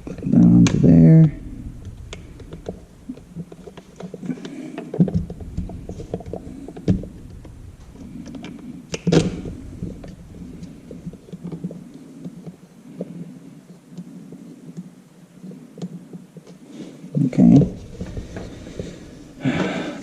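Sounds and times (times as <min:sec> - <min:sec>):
plastic parts clicking and knocking: 0:00.1 - 0:12.6, 0:17.6 - 0:20.0.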